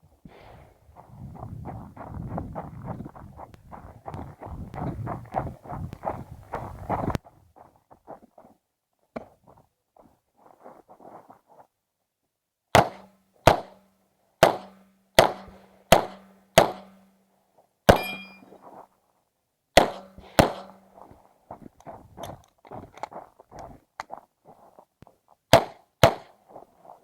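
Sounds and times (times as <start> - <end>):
pistol gunshots: 12.8 - 13.8, 14.4 - 17.0, 17.9 - 18.4, 19.8 - 20.8, 25.5 - 26.4.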